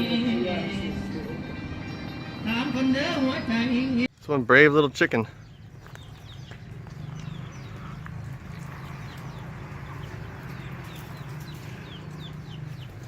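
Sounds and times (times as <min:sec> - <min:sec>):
chicks peeping: 0:05.4 - 0:13.0.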